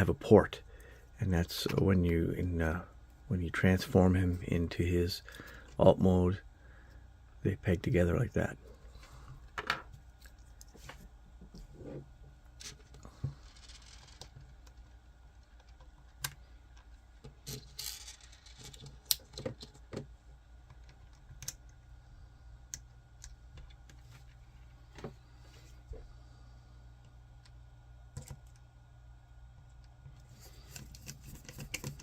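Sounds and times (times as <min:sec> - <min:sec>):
plastic parts clicking and tapping: 0:29.6 - 0:32.0.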